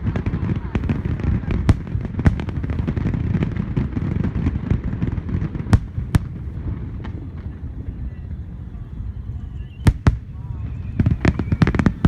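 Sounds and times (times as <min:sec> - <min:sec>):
sharp firework bangs: 0:00.0 - 0:07.3, 0:09.8 - 0:12.0
fireworks crackling: 0:00.0 - 0:12.0
low booming: 0:00.8 - 0:04.6, 0:05.2 - 0:07.9, 0:08.8 - 0:12.0.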